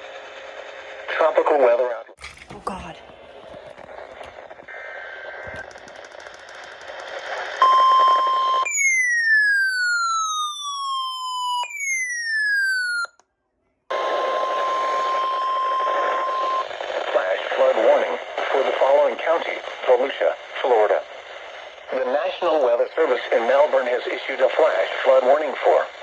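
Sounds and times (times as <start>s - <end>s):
radio static: 2.2s - 8.2s, 15.8s - 26.0s.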